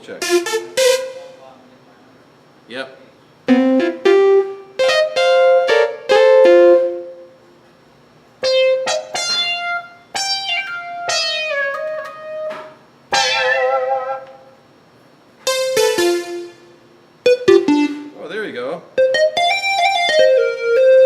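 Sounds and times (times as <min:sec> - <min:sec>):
plucked keytar notes: 0:00.2 - 0:01.4, 0:03.5 - 0:07.2, 0:08.4 - 0:14.5, 0:15.5 - 0:18.2, 0:19.0 - 0:21.0.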